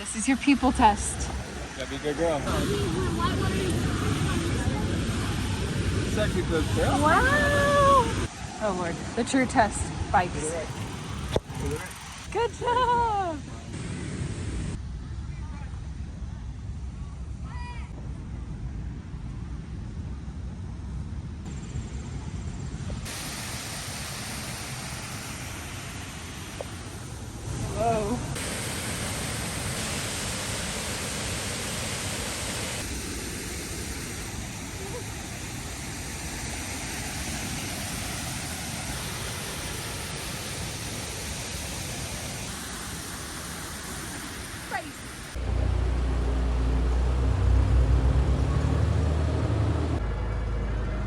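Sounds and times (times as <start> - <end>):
bright rushing hiss: 0.0 - 14.8, 23.0 - 48.7
wind rumbling on microphone: 0.0 - 23.2.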